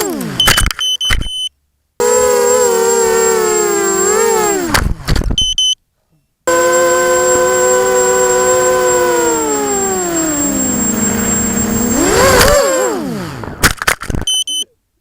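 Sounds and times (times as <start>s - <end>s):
quadcopter motors whining: 0.0s - 0.5s, 2.0s - 4.8s, 6.5s - 13.7s.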